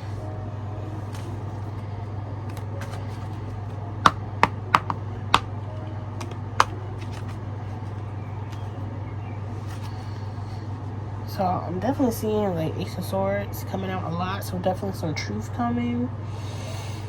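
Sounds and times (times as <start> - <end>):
cards snapping and tapping: 4.1 - 5.5, 6.2 - 7.4.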